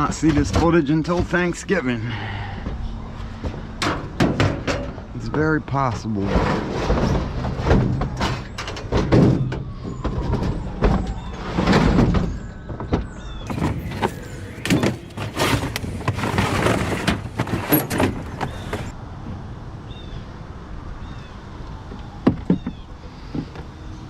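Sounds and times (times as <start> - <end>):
metal appliances clanking and scraping: 13.5 - 18.9.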